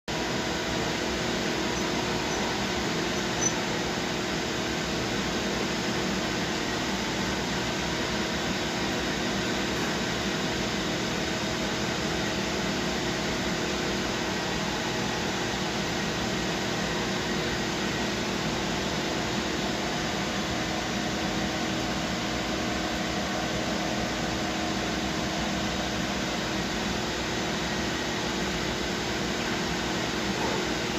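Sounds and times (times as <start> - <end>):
machine hum and hiss: 0.1 - 30.9
steady machine tones: 0.6 - 4.2.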